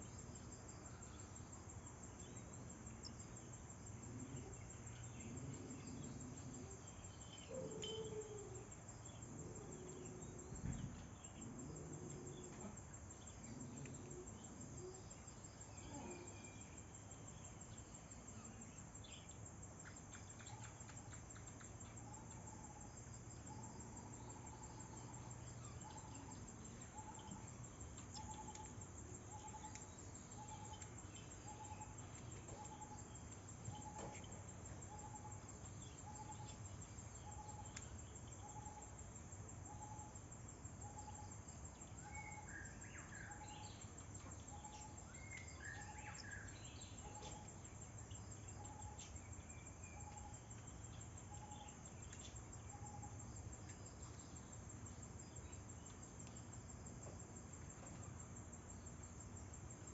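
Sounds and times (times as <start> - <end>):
crickets chirring: 0.0 - 59.9.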